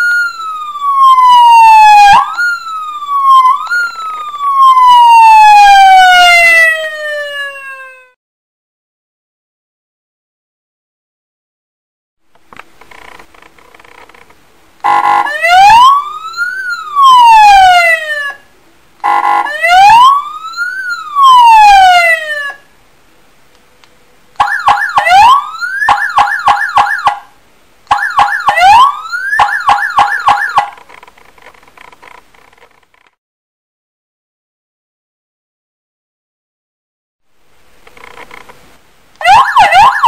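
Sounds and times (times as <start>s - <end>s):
electronic siren: 0.0s - 8.2s, 14.8s - 18.4s, 19.0s - 22.6s, 24.4s - 27.3s, 27.9s - 30.8s, 39.2s - 40.0s.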